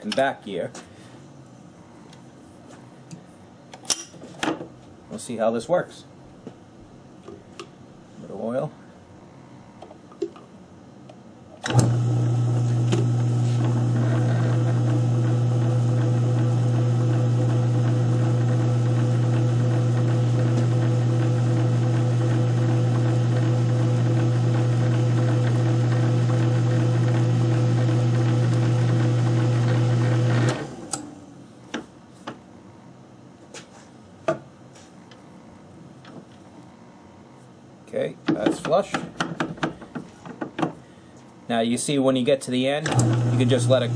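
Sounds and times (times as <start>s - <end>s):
lathe humming: 11.7s - 30.8s, 42.9s - 43.9s.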